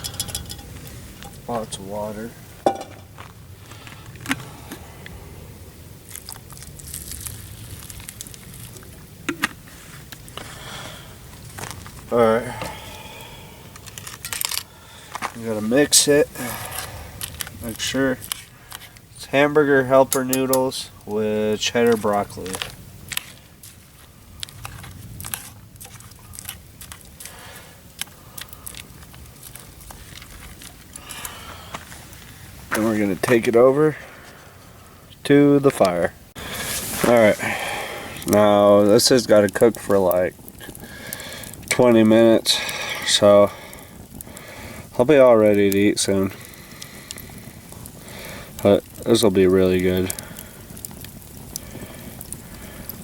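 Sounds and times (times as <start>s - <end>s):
pot and utensils clinking: 0.0s - 1.4s, 2.6s - 3.1s
soft hiss: 27.1s - 53.0s.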